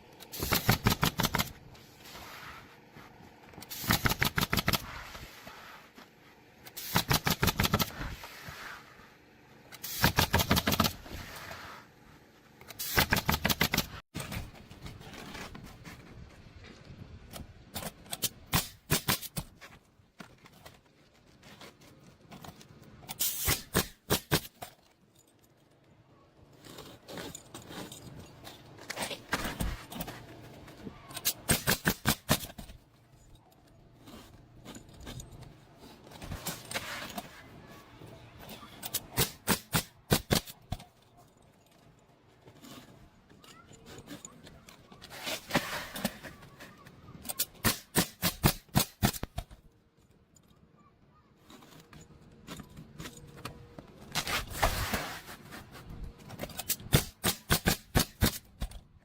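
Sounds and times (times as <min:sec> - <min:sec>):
rapid nailing strikes: 0:00.3 - 0:01.6, 0:03.6 - 0:05.0, 0:06.8 - 0:08.2, 0:09.8 - 0:11.2, 0:12.8 - 0:14.0, 0:23.2 - 0:24.6, 0:31.2 - 0:32.8, 0:38.9 - 0:40.9, 0:47.5 - 0:49.6, 0:56.7 - 0:58.8.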